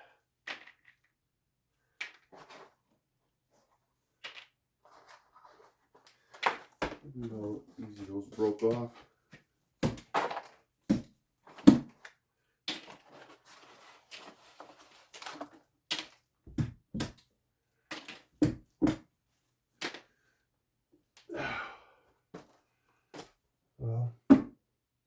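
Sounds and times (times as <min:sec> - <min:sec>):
scraping and rustling: 0:04.8 - 0:06.4, 0:13.0 - 0:15.6.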